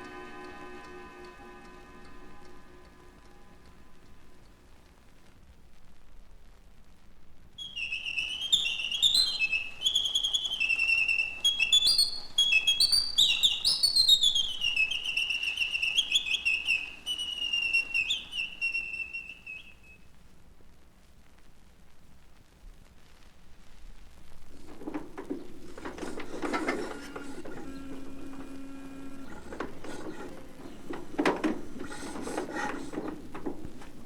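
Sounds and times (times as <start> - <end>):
mechanical bird whistling song: 7.6 - 20.0.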